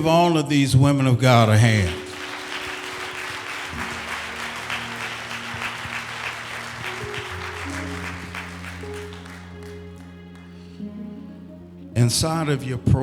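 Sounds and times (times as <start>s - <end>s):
congregation applauding: 1.2s - 11.5s
sustained musical chords: 1.8s - 13.0s.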